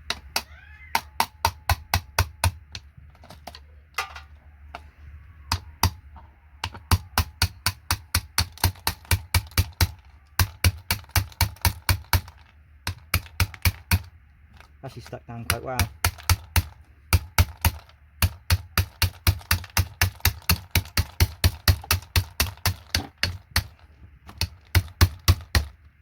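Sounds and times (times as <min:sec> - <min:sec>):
sharp plastic keyboard clicks: 0:06.6 - 0:14.8, 0:15.4 - 0:25.8.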